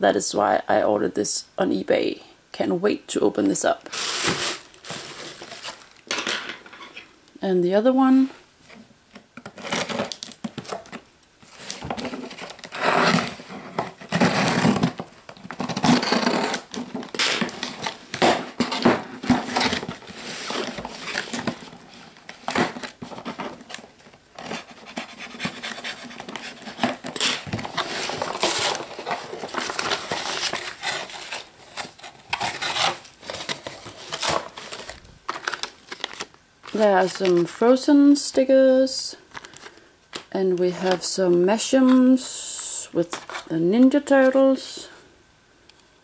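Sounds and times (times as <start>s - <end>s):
packaging tearing and crinkling: 3.9s - 6.1s, 9.4s - 37.7s.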